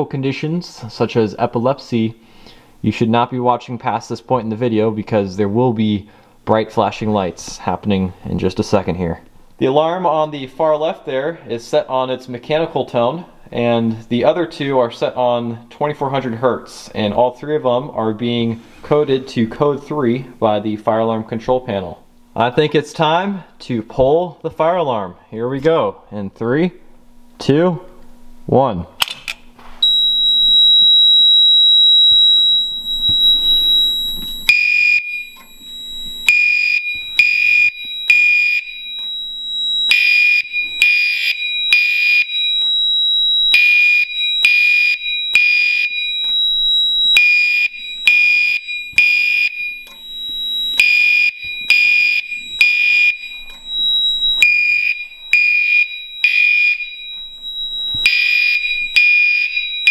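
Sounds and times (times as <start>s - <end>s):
fire alarm horns pulsing: 29.8s - 59.9s
steady high tone: 29.8s - 59.9s.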